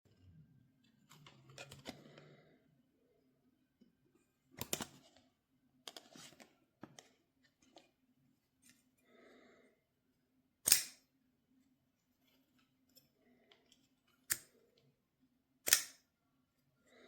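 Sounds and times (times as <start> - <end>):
folding knife blade clicks: 10.7 - 11.0, 15.6 - 16.0.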